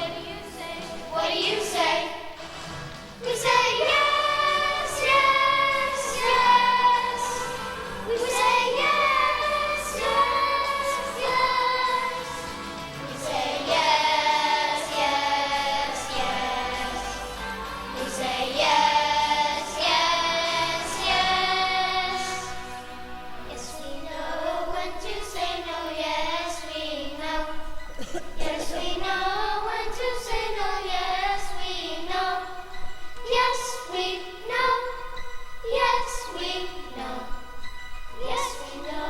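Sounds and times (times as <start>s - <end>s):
people and children singing: 0.0s - 22.9s, 23.5s - 37.5s, 38.2s - 39.0s
instrumental accompaniment: 0.0s - 31.1s.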